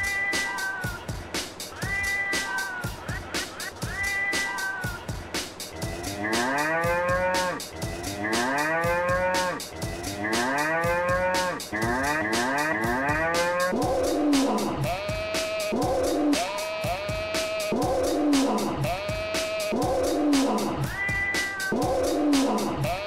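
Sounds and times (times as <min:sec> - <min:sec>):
steady drum beat: 0:00.0 - 0:23.0
cow mooing: 0:06.2 - 0:07.6, 0:08.2 - 0:09.6, 0:10.2 - 0:13.8.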